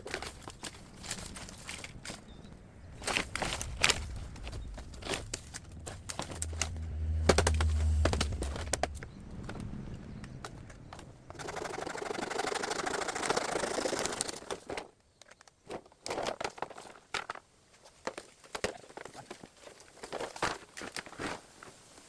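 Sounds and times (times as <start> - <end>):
dry twigs snapping: 0.0 - 11.1
bamboo leaves rustling: 0.0 - 12.2, 15.6 - 22.0.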